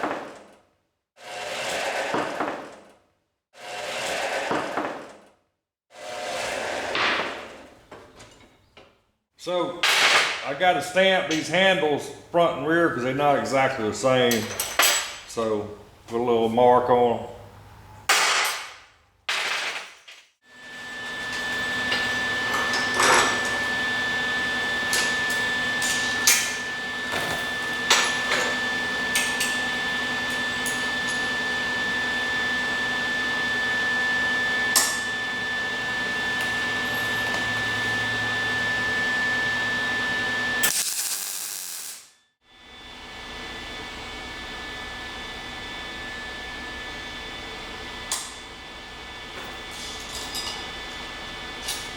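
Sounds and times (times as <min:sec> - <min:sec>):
power tool whining: 0:20.7 - 0:41.9
clicks of metal being worked: 0:21.3 - 0:23.6, 0:48.1 - 0:48.4.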